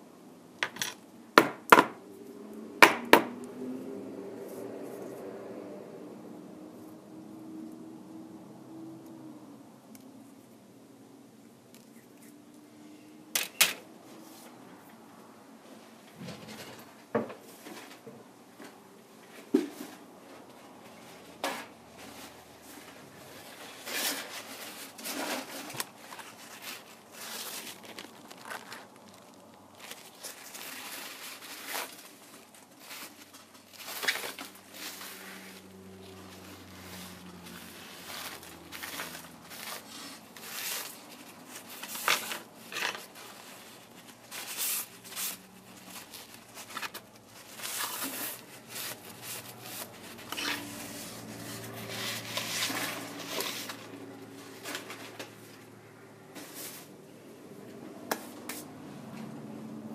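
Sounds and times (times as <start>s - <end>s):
crinkling scraping and clicking: 16.0s - 55.7s.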